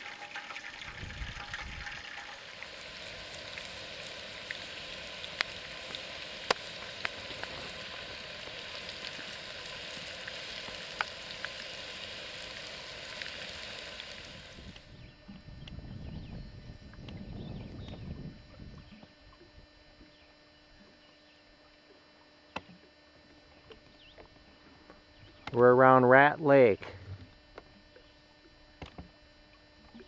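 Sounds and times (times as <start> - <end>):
fish fillets sizzling: 0.0 - 14.8
sharp pops and crackles: 1.4 - 15.8.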